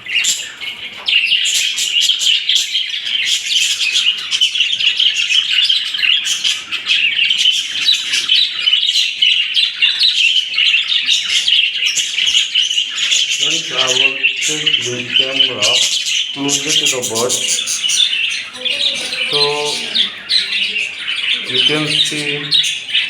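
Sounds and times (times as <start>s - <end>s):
flock of budgerigars chattering: 0.0s - 23.0s.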